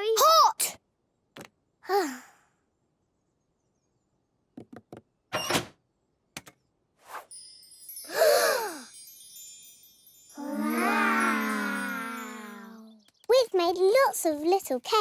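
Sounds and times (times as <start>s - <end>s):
tinkling chime: 7.1s - 13.1s
held pitched tone: 10.4s - 13.0s.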